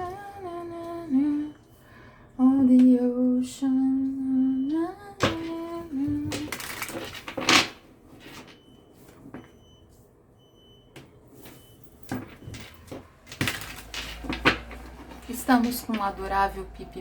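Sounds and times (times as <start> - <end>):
faint high warning beeps: 4.2 - 6.2, 8.4 - 12.9
handling clicks and knocks: 12.0 - 16.2.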